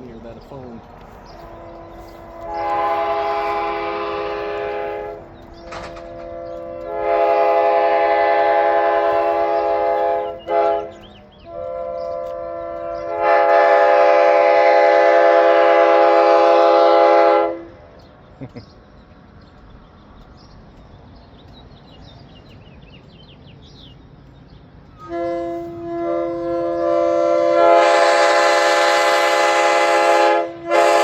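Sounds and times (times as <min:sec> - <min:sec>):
locomotive air horn blasts: 0:01.3 - 0:17.8, 0:25.0 - 0:31.0.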